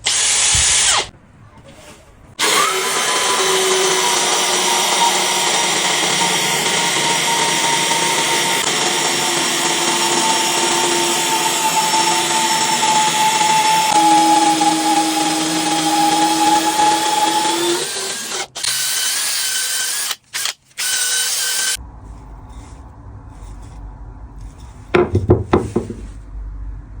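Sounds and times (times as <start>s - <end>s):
electric power tool whining: 2.4s - 21.8s
low hum: 21.8s - 25.4s
knocks: 25.0s - 26.2s.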